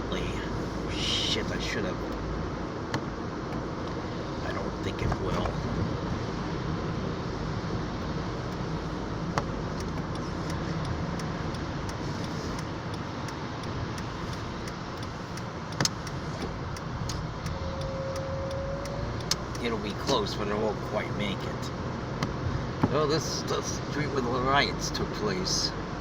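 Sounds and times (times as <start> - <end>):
road and engine noise inside car: 0.0 - 26.0
sharp clicks: 9.3 - 20.6.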